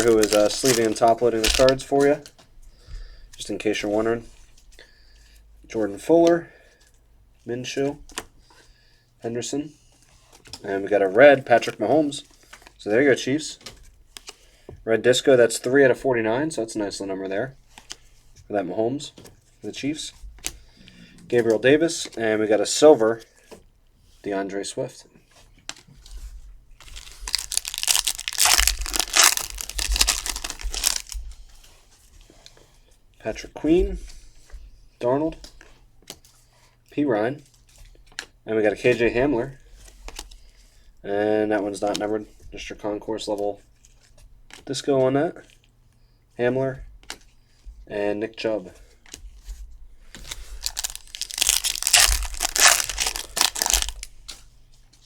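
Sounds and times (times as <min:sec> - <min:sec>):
wrapper tearing and crinkling: 0:00.0 - 0:02.3, 0:26.8 - 0:31.2, 0:50.2 - 0:54.4.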